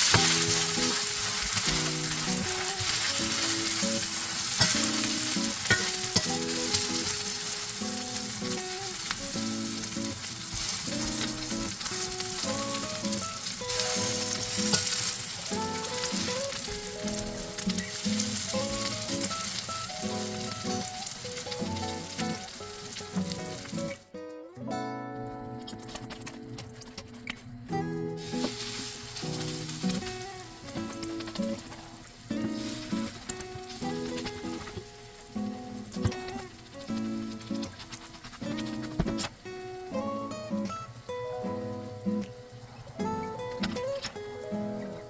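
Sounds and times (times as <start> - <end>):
utensil clicking against pan: 0.0 - 7.6
pancake sizzling in oil: 0.0 - 24.0, 28.2 - 45.0
quiet background music: 0.0 - 45.0.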